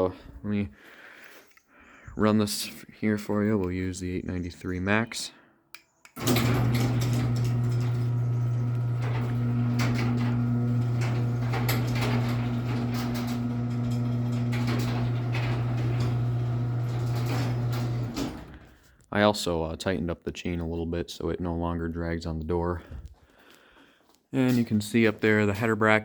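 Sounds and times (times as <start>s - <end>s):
door rattles: 6.2s - 8.1s, 9.0s - 18.6s
garage door opener motor humming: 6.2s - 18.6s.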